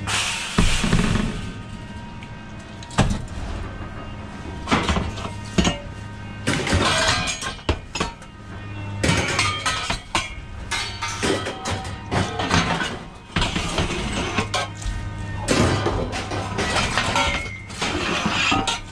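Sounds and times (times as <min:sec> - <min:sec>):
scrap metal clanging: 0:04.6 - 0:18.9.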